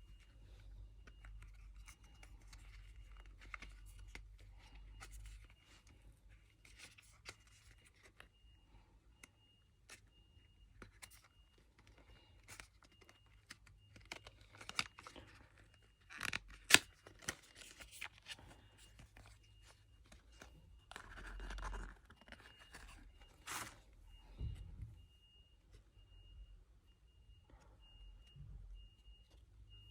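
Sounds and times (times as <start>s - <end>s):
packaging clicks and scratches: 0.1s - 8.3s, 10.8s - 23.8s
packaging snapping or tearing: 12.4s - 18.4s.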